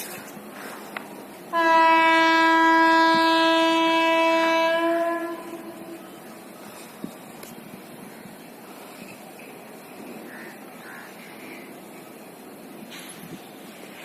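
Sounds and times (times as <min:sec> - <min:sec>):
train horn blast: 0:01.5 - 0:06.2.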